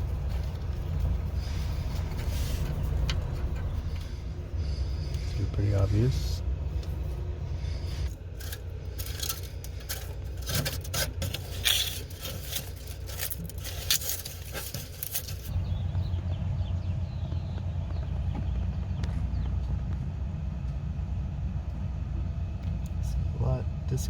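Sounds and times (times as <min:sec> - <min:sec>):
steady low hum: 0:00.0 - 0:24.0
hands handling wiring harness: 0:06.7 - 0:15.5.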